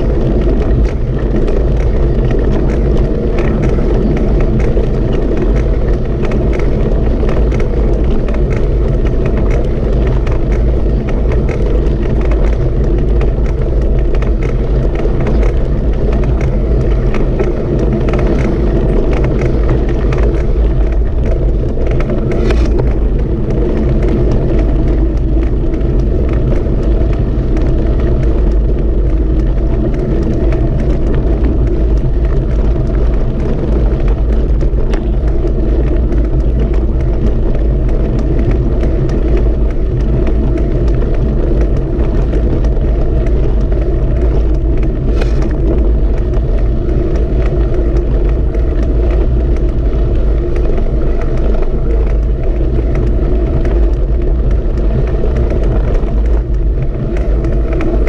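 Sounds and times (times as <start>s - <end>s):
vehicle engine rumble: 0.0s - 58.0s.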